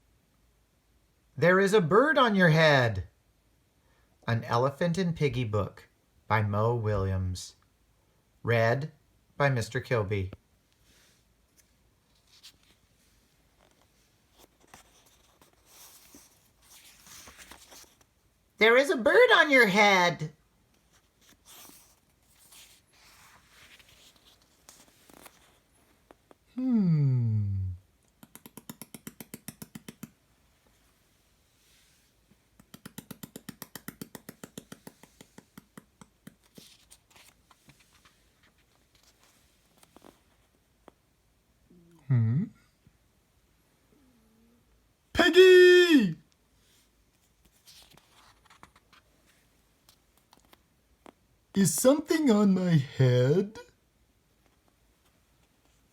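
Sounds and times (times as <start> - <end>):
faint paper rustling: 10.8 - 18.3, 20.6 - 26.5, 34.2 - 41.1, 46.5 - 51.2
rapid sharp taps: 28.2 - 30.2, 32.5 - 36.5.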